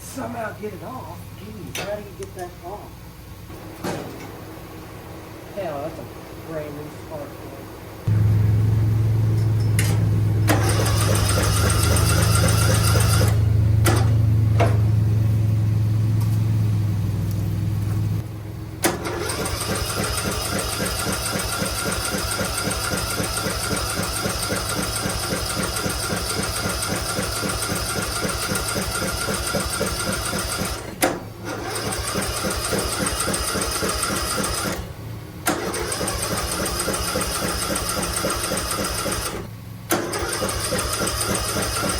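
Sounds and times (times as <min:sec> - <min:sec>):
engine cranking without starting: 0:09.3 - 0:15.0, 0:18.8 - 0:41.9.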